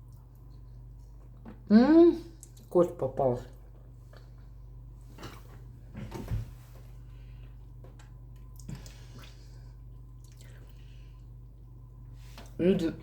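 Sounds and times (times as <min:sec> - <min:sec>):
low electrical hum: 0:00.0 - 0:13.0
wet chewing mouth noises: 0:10.2 - 0:10.8.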